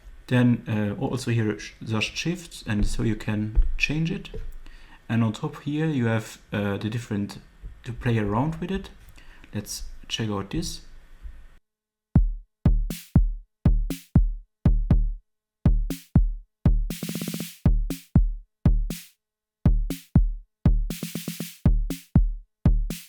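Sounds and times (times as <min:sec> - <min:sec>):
drum machine beat: 0:12.2 - 0:23.0
fast drum roll: 0:15.7 - 0:19.1, 0:19.7 - 0:23.0.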